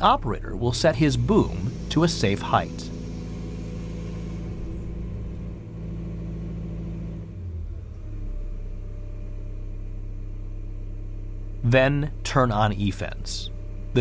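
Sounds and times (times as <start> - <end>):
excavator diesel engine running: 0.0 - 10.7, 11.6 - 14.0.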